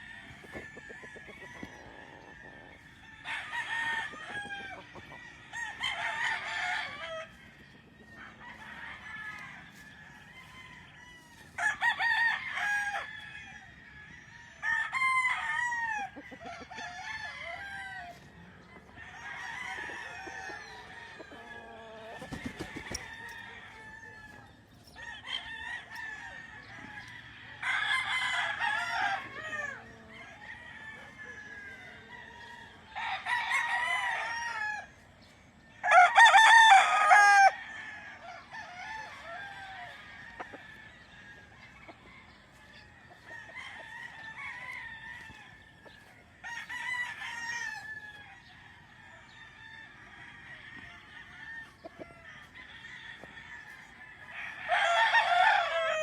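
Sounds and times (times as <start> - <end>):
hens clucking: 0.0 - 56.0
roosters crowing: 0.0 - 56.0.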